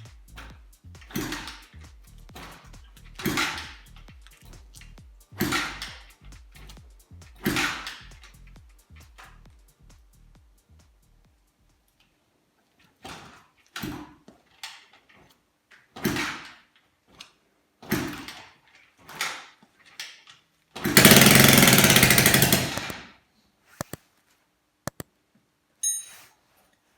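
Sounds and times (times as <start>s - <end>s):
motorcycle engine coughing and running: 21.0s - 22.9s
sharp clicks: 21.0s - 23.0s, 23.8s - 24.0s, 24.9s - 25.1s.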